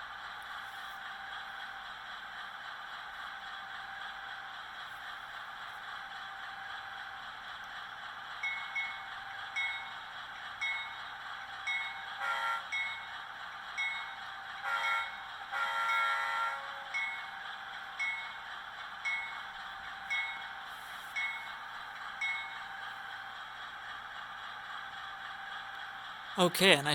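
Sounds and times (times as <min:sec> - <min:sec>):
locomotive horn blasts: 0:12.2 - 0:12.7, 0:14.6 - 0:16.8.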